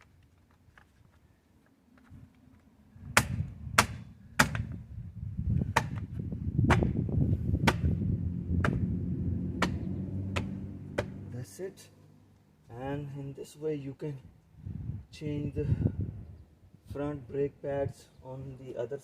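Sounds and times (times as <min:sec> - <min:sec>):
low rumble: 0:06.2 - 0:11.4
sharp knocks: 0:06.7 - 0:07.0, 0:07.6 - 0:08.0, 0:08.6 - 0:08.9, 0:09.5 - 0:11.3.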